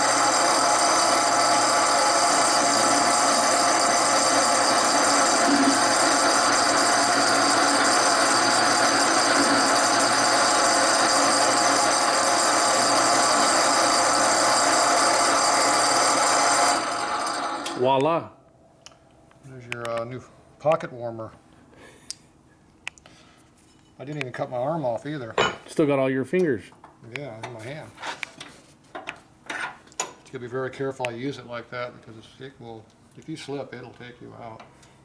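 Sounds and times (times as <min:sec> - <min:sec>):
power saw cutting metal: 0:00.0 - 0:17.8.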